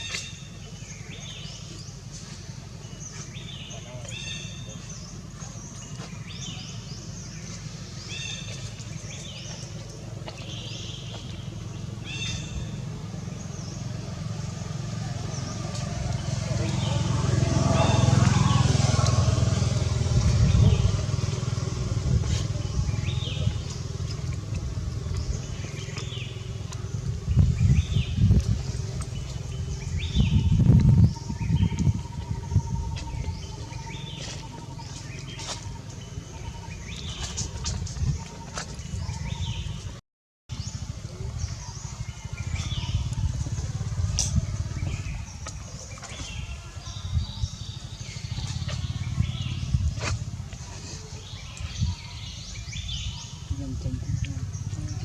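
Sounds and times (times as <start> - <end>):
small birds chirping: 0.0 - 55.0
vehicle engine running: 0.0 - 55.0
fluttering low rumble: 11.2 - 55.0.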